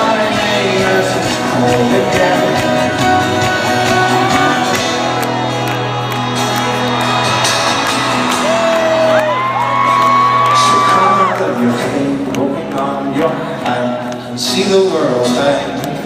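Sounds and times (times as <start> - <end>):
folk rock band playing: 0.0 - 16.0
crowd shouting and whooping: 3.2 - 11.7.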